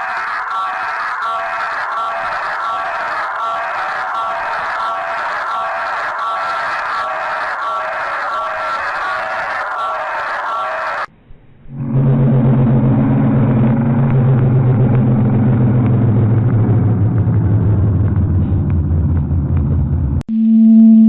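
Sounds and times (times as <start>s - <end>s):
droning emergency alarm tone: 0.0s - 11.1s, 11.7s - 18.5s, 20.3s - 21.0s.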